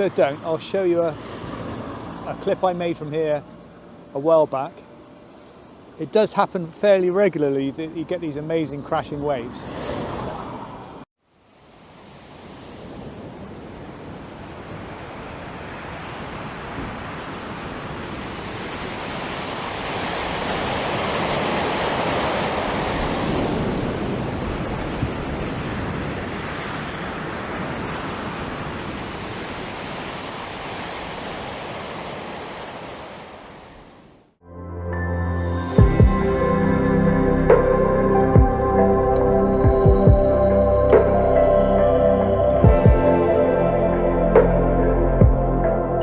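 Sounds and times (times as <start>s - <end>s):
sea waves breaking: 0.0s - 34.3s.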